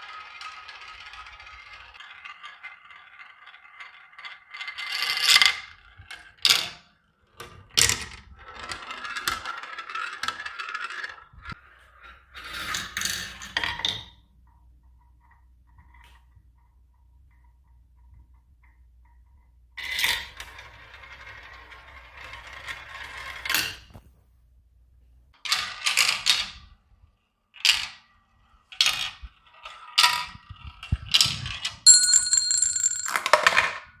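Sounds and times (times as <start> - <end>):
marbles rolling and clacking on track: 0.0 - 11.6, 12.4 - 14.2, 17.4 - 23.9, 25.4 - 26.7, 27.6 - 34.0
bell-like ring: 31.9 - 33.6.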